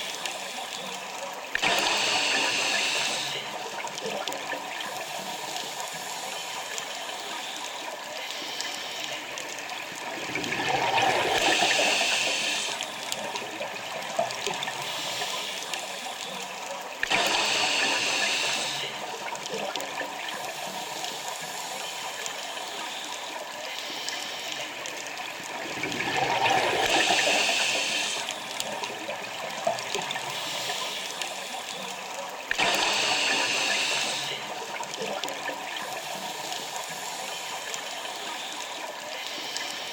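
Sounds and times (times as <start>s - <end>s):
regulator breathing hiss: 1.8s - 3.5s, 11.4s - 12.8s, 17.2s - 19.0s, 26.8s - 28.3s, 32.7s - 34.4s
rushing bubbles: 9.5s - 15.1s, 24.9s - 31.6s.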